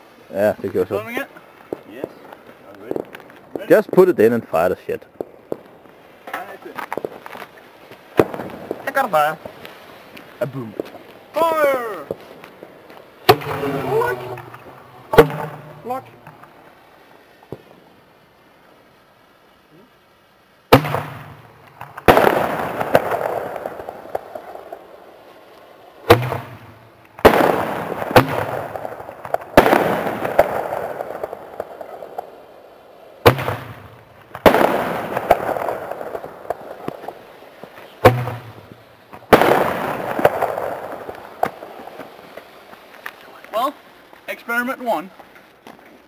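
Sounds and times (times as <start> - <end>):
firework mortar launch crack: 0.0 - 18.5, 20.6 - 46.0
firework bang in the air: 13.2 - 16.0, 20.7 - 24.8, 26.1 - 31.9, 33.2 - 37.2, 38.0 - 38.7, 39.3 - 42.1.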